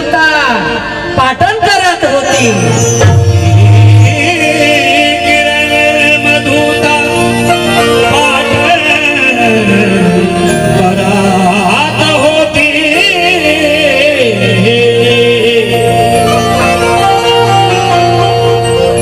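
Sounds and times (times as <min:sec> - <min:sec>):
wavering instrumental melody: 0:02.3 - 0:19.0.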